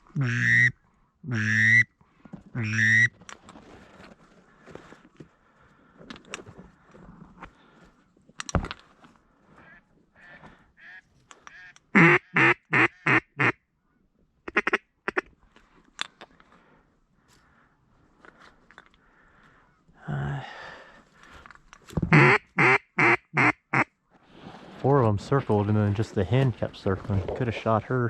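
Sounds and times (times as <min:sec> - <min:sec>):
duck call quacks: 0:00.1 - 0:01.9, 0:02.6 - 0:03.1, 0:09.6 - 0:13.6, 0:14.5 - 0:15.3, 0:22.1 - 0:23.9.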